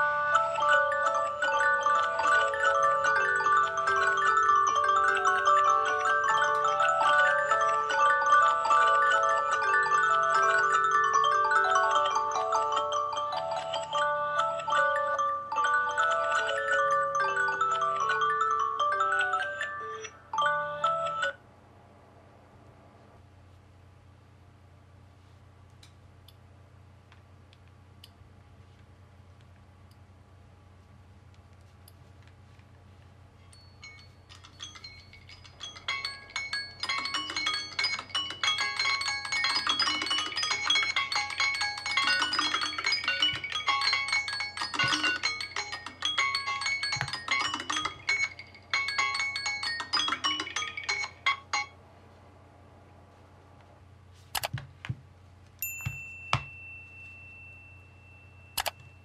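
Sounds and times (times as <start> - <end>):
phone alarm bell-like melody: 0.0 - 21.4, 33.5 - 51.8, 55.6 - 59.0
sharp clicks and taps: 54.4 - 55.0.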